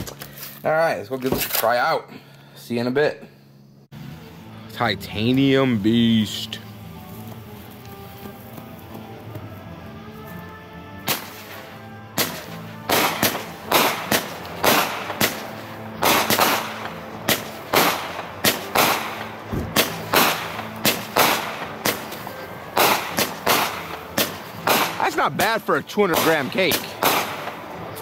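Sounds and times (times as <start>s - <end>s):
firework cake bangs: 12.2s - 25.2s.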